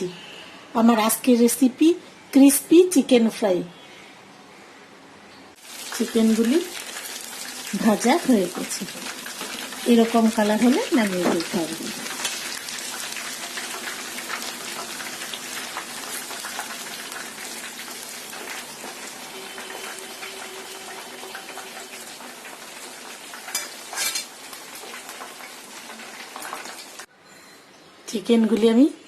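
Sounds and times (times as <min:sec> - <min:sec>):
chicken sizzling in hot oil: 0:05.6 - 0:27.1.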